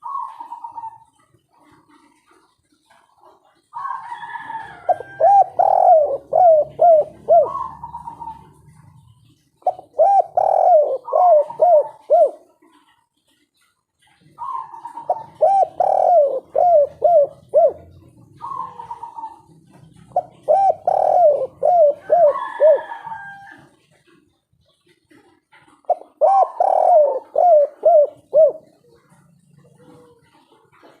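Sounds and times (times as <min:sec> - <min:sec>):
dove cooing: 0:00.0 - 0:31.0.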